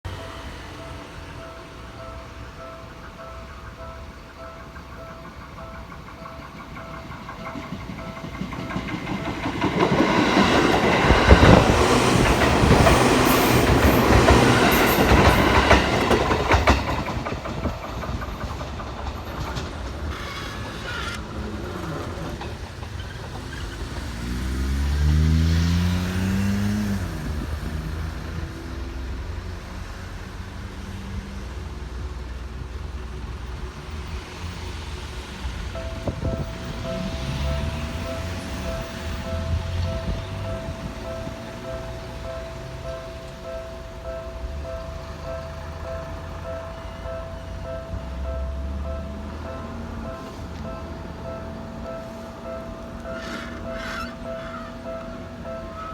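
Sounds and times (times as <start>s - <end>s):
road vehicle engine: 0.0s - 55.9s
train wheels clattering: 0.1s - 27.8s, 33.6s - 55.9s
electric train passing: 0.1s - 55.9s.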